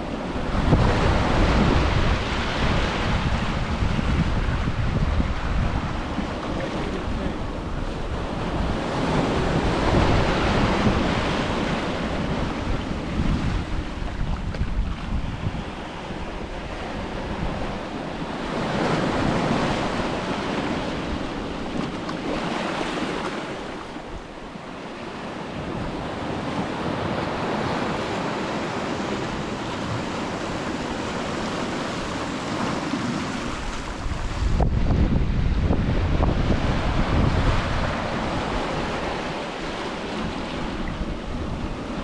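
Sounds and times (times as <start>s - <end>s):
wind buffeting microphone: 0.0s - 24.6s, 25.2s - 42.0s
low wind rumble: 0.0s - 42.0s
sea waves breaking on shore: 0.0s - 42.0s.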